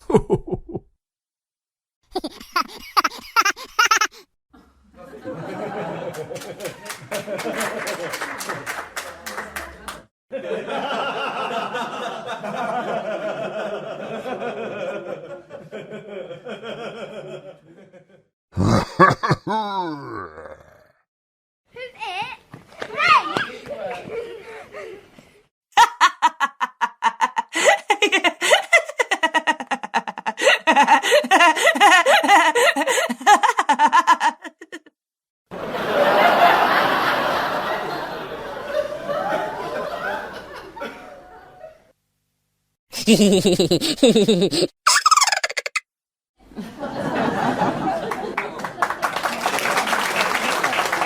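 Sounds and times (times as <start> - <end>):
people laughing: 0.0 - 0.8, 2.2 - 4.2, 4.9 - 20.0, 23.3 - 25.2, 25.8 - 34.9, 35.5 - 41.9, 43.0 - 45.7, 46.6 - 51.0
voices laughing in rapid pulses: 2.1 - 4.3, 43.0 - 45.8.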